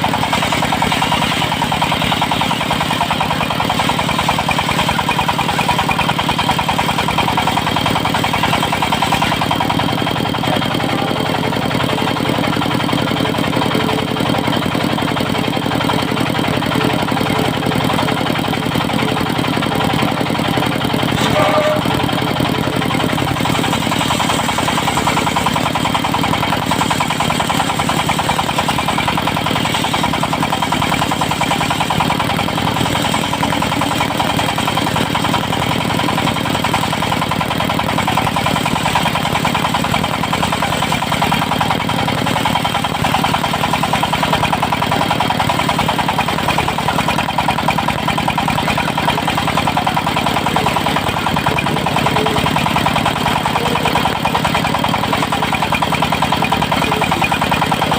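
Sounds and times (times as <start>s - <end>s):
saw blade high tone: 0.0s - 5.1s, 10.3s - 34.0s, 49.8s - 55.7s
diesel engine running: 0.0s - 57.9s.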